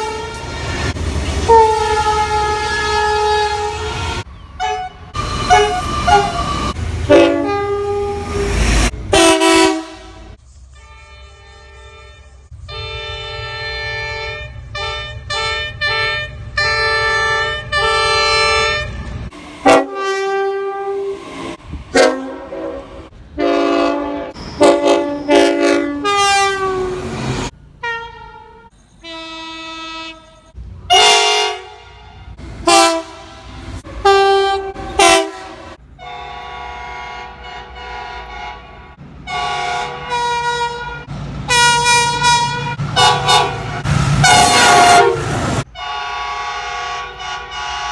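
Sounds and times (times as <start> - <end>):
train horn blasts: 0.0 - 27.2, 27.8 - 47.9
locomotive engine rumble: 0.0 - 47.9.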